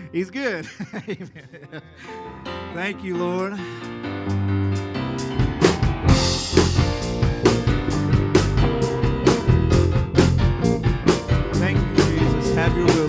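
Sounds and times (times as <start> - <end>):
band held chord with bass: 4.3 - 13.0
drum kit steady beat: 4.3 - 13.0.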